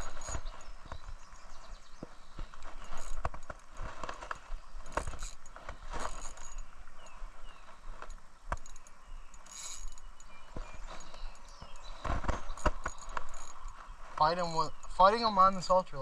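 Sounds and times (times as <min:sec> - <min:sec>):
spinning reel being cranked: 0:02.7 - 0:04.2, 0:04.8 - 0:06.6, 0:08.6 - 0:10.2.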